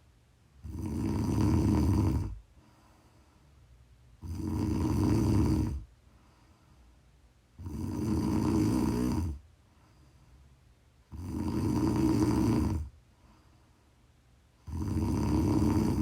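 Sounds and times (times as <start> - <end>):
quiet breathing: 0.0 - 16.0
person snoring: 0.6 - 2.4, 4.2 - 5.9, 7.6 - 9.4, 11.1 - 12.9, 14.6 - 16.0.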